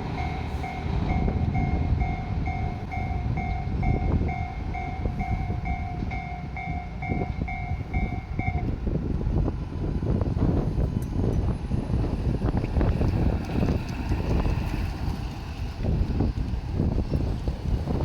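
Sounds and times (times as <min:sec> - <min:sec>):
passing train rumble: 0:00.0 - 0:18.0
level-crossing two-tone bell: 0:00.1 - 0:08.7.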